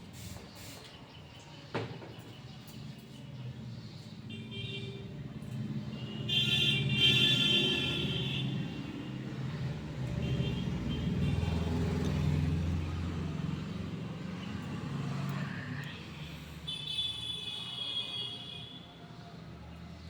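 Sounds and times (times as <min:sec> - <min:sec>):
vehicle engine passing: 0:11.0 - 0:16.6.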